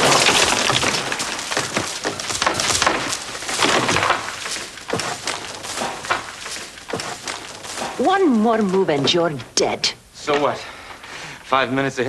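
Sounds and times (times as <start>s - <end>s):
crashing and breaking clatter: 0.0s - 9.4s.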